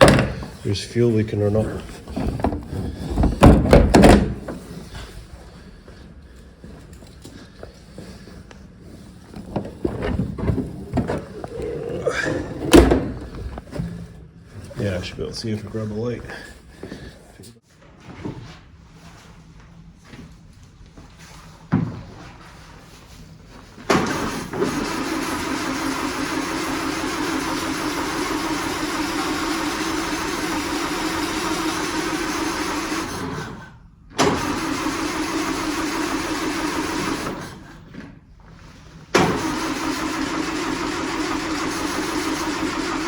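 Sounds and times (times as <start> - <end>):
sudden clunk: 0.0 - 0.5, 12.5 - 13.9
engine cranking on starter motor: 9.0 - 14.2, 23.9 - 37.8, 39.1 - 43.0.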